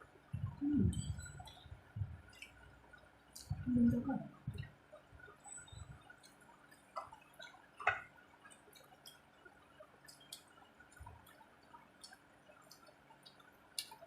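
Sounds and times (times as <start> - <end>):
mouth clicks of chewing: 12.0 - 14.0.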